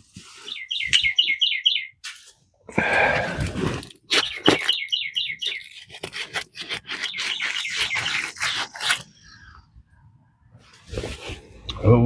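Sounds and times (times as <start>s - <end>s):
rubbing and scraping strokes: 0.0s - 1.2s, 2.1s - 9.5s, 10.6s - 11.6s
bird chirping faintly: 0.4s - 2.0s, 4.1s - 10.0s.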